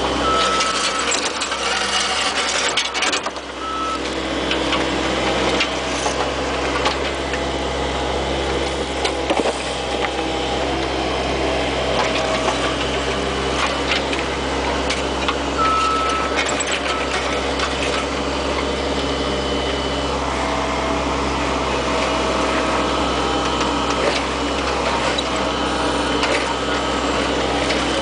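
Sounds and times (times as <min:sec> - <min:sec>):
excavator diesel engine running: 0:00.0 - 0:28.0
knocks and scrapes: 0:00.7 - 0:03.4
short high beep: 0:15.6 - 0:17.2.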